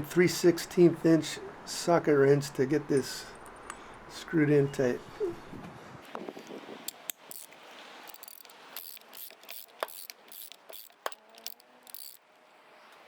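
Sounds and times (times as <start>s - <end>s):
ratchet wrench clicking: 6.9s - 12.2s.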